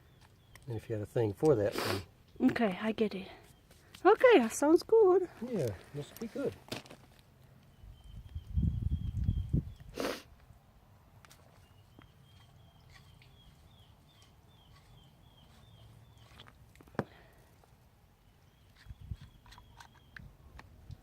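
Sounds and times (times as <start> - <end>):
bird chirping: 0.0 - 1.4, 7.6 - 10.0, 11.4 - 16.6, 18.2 - 20.4.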